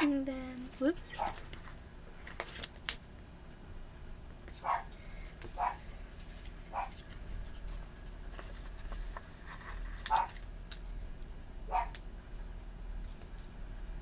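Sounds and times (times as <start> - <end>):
crackly paper rustles: 0.6 - 3.0, 6.1 - 10.5.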